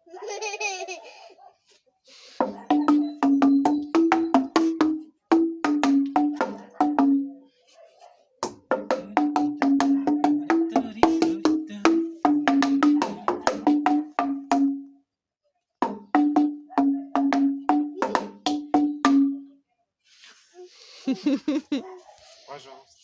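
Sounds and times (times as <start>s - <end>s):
mallet striking wooden beams: 2.4s - 7.4s, 8.4s - 14.9s, 15.8s - 19.5s.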